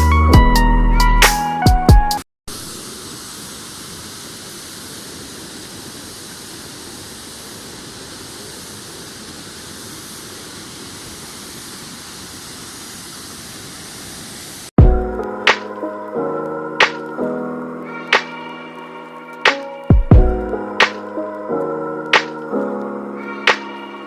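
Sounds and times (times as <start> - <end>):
waterfall roaring: 2.5 - 14.7.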